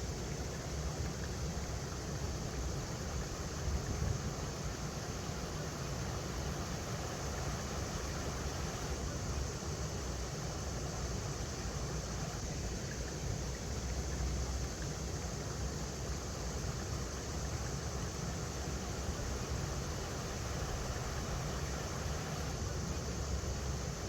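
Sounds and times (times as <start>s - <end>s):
river water flowing over rocks: 0.0s - 24.0s.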